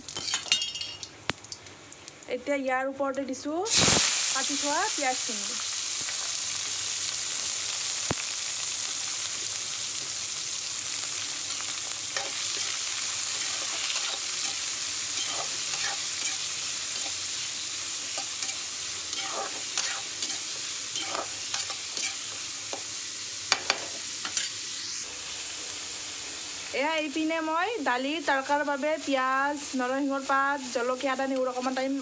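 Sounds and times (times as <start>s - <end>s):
onions sizzling in hot oil: 3.3s - 32.0s
spatula scraping a pan: 15.2s - 17.1s, 18.2s - 22.3s.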